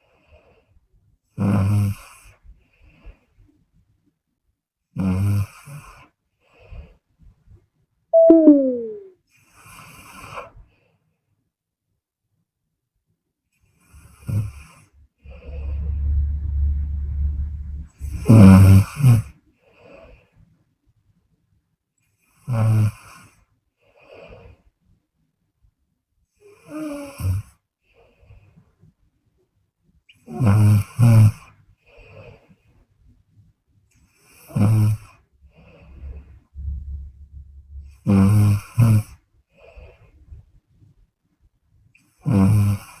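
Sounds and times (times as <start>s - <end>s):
woman snoring: 30.3s - 31.2s.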